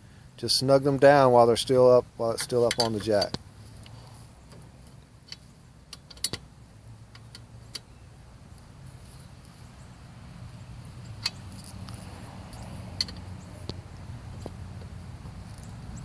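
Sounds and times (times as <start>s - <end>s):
metallic clinks of lug nuts: 2.3s - 4.6s, 5.2s - 6.5s, 7.1s - 7.9s, 11.0s - 11.8s, 12.5s - 13.6s.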